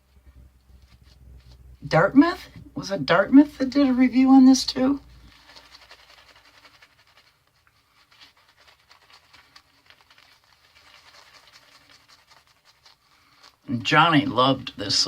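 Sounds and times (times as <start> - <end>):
razor scraping stubble: 8.1 - 13.6.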